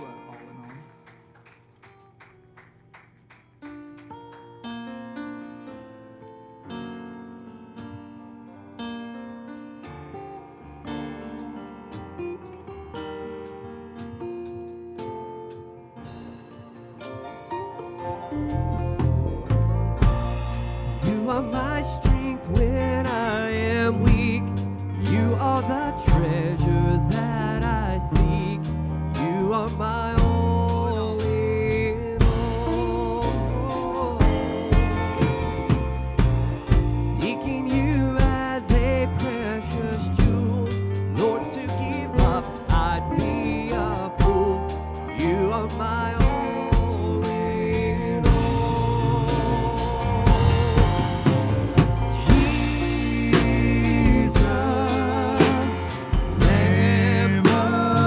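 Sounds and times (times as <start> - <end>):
drum-kit beat: 19.0 - 23.2, 32.2 - 39.4, 41.2 - 43.3, 48.2 - 58.0
sustained melody with vibrato: 30.5 - 58.0.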